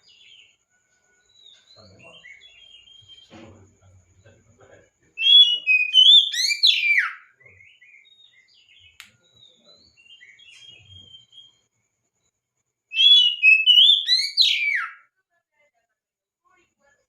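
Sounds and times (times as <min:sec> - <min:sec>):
bird singing whistled notes: 0:01.2 - 0:03.4, 0:05.2 - 0:12.3, 0:12.9 - 0:15.0.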